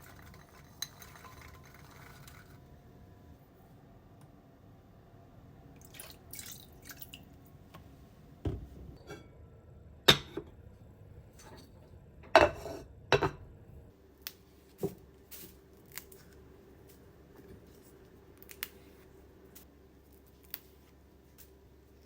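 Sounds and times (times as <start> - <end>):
faint steady hum: 0.0 - 22.0
kitchen items clinking and knocking: 10.1 - 10.6, 11.4 - 13.5.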